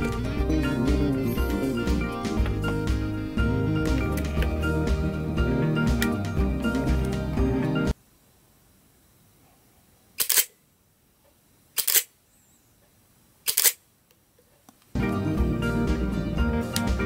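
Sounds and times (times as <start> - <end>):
camera shutter clacking: 10.2 - 10.6, 11.8 - 12.1, 13.5 - 13.8.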